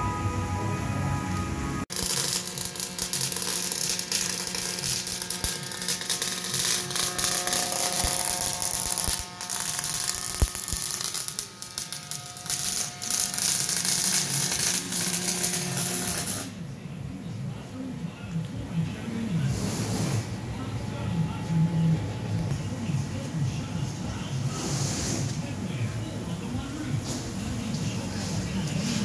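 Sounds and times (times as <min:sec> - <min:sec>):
welding arc crackling: 0:01.9 - 0:16.6.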